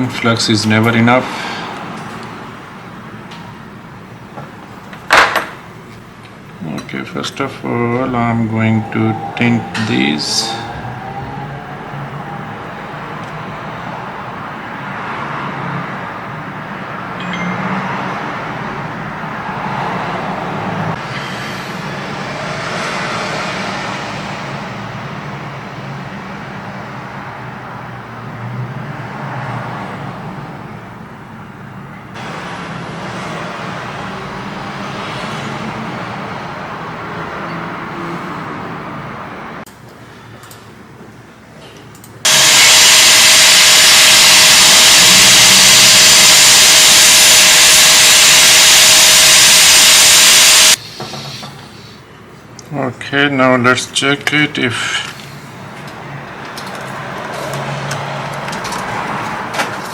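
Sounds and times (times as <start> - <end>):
fan or blower rushing: 42.3 - 50.8.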